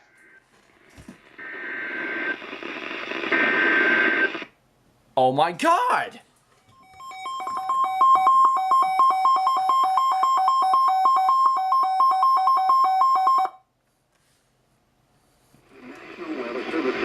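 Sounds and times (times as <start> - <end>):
rapid two-tone alarm beeping: 6.8 - 13.5.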